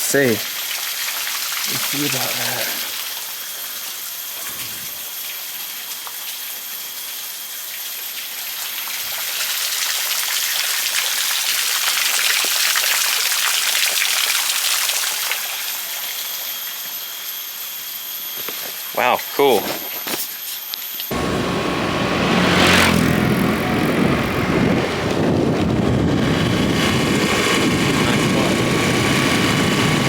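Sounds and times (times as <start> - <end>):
rushing water: 0.0 - 3.0.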